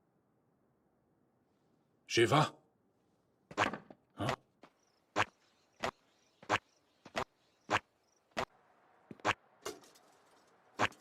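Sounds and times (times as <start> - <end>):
cartoon footstep sound effect: 3.5 - 4.4, 9.1 - 9.4.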